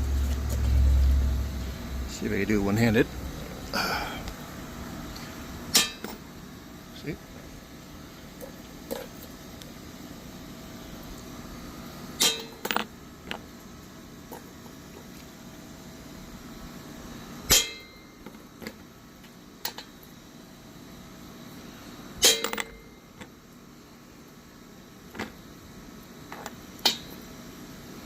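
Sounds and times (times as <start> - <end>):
hammer striking metal: 5.8 - 6.1, 17.5 - 18.0.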